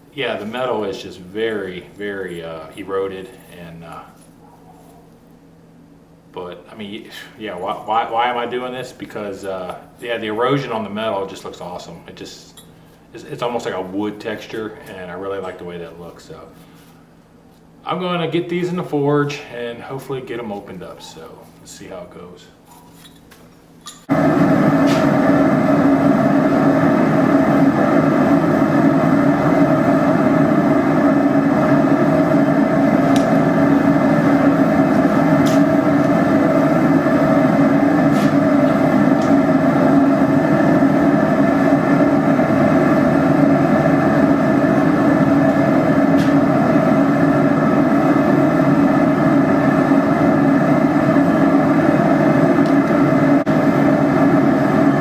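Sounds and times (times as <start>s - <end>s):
constant hum: 0.0s - 55.0s
forge burner rushing: 24.1s - 55.0s.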